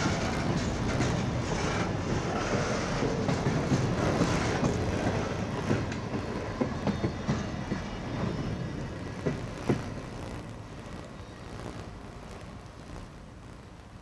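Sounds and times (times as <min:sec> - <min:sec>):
train wheels clacking on rail joints: 0:00.0 - 0:10.1
freight train rumble: 0:00.0 - 0:14.0.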